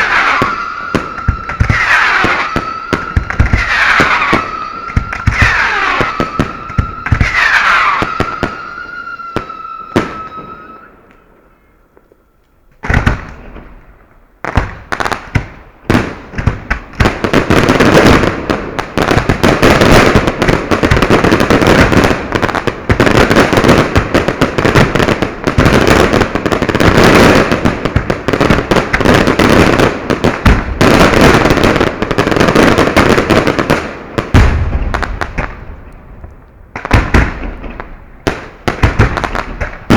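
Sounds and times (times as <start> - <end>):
whistling firework shells: 0.0 - 13.6
fireworks bangs and crackling: 0.0 - 39.9.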